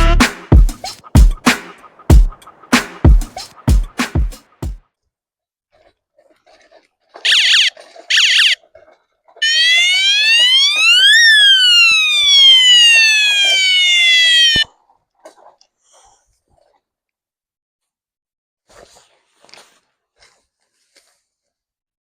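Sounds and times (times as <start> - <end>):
electronic siren-like tone: 7.3 - 8.6, 9.4 - 14.6.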